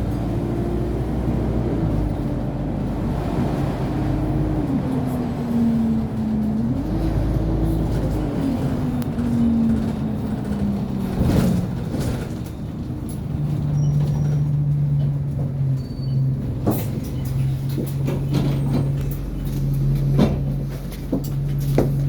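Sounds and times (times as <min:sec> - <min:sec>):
knocks and rattles: 0:16.4 - 0:22.0.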